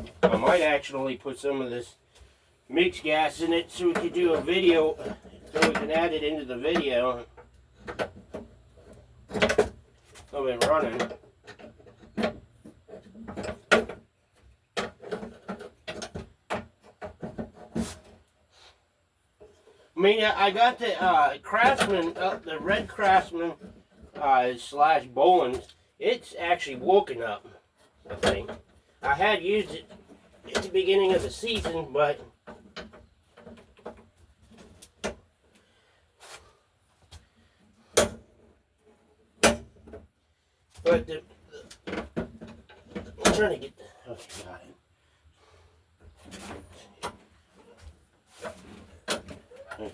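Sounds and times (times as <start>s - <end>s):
tools knocking and clunking: 3.9s - 6.0s, 6.8s - 18.2s, 37.8s - 40.1s, 40.8s - 43.6s, 46.0s - 49.9s.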